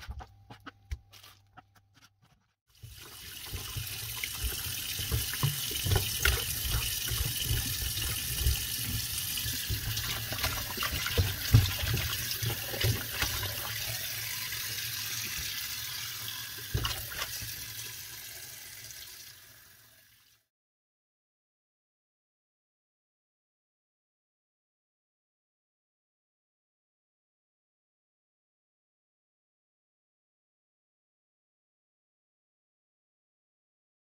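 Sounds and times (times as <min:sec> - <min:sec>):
objects knocking and clattering: 0:00.0 - 0:13.7
tap water running into sink: 0:02.8 - 0:20.4.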